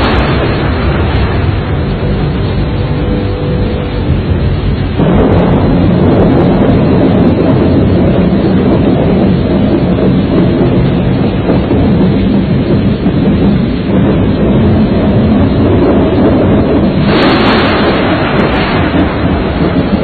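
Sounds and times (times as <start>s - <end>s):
storm wind buffeting microphone: 0.0s - 20.0s.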